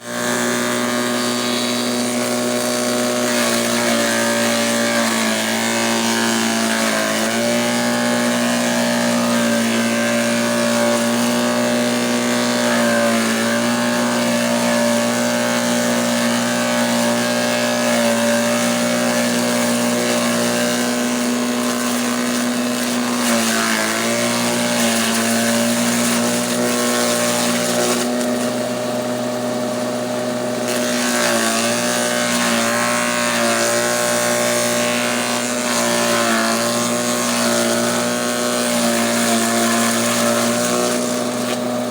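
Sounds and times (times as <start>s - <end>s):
chaff cutter engine running: 0.0s - 41.9s.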